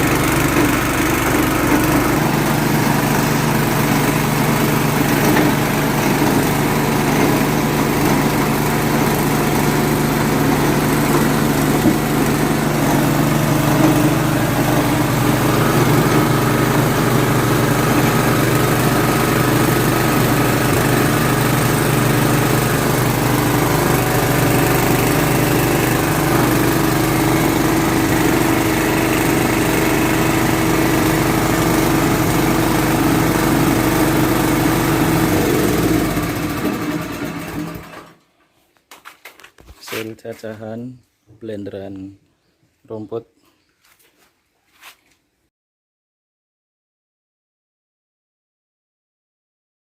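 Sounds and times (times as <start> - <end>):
feed chopper engine droning: 0.0 - 38.2.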